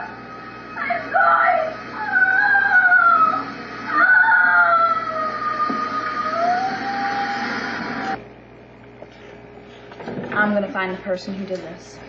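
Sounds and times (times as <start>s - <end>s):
high siren-like wail: 0.0s - 8.2s.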